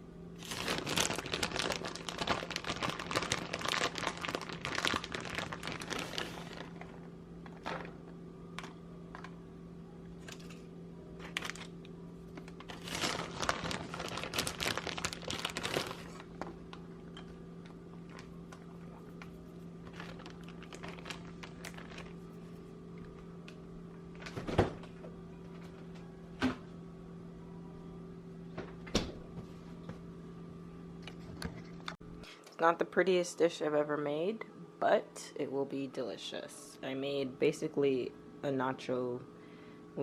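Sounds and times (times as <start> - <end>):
steady low hum: 0.0 - 40.0.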